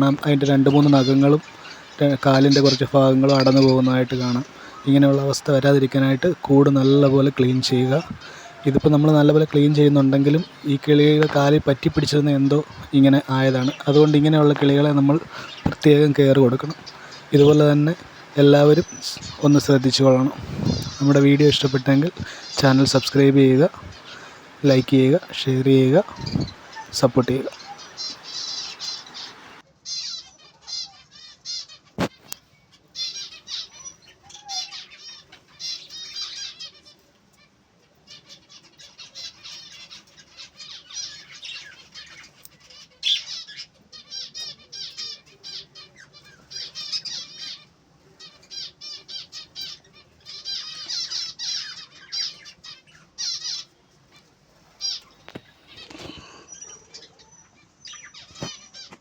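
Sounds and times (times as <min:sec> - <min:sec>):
finches chirping: 0:00.0 - 0:37.1, 0:38.0 - 0:59.0.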